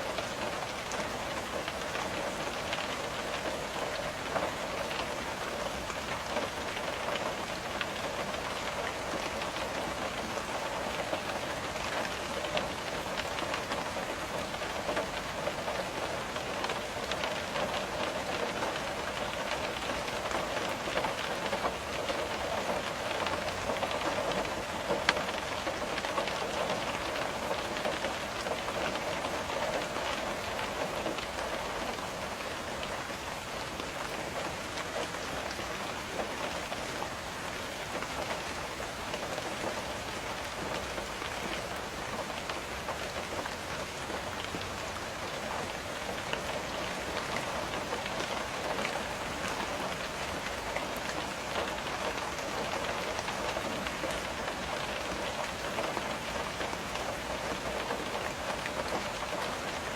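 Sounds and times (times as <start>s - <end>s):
rain tapping on a window: 0.0s - 59.9s.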